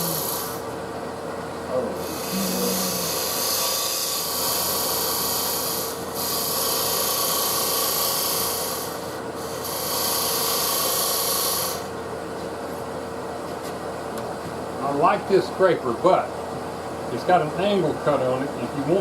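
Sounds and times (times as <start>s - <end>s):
lathe humming: 0.0s - 13.0s.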